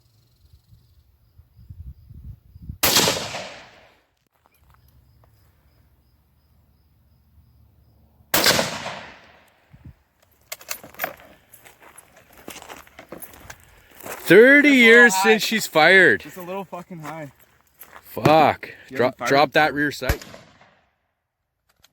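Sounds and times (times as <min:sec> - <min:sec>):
rifle shots with echo: 0:02.8 - 0:03.9, 0:08.3 - 0:09.4, 0:20.1 - 0:20.9.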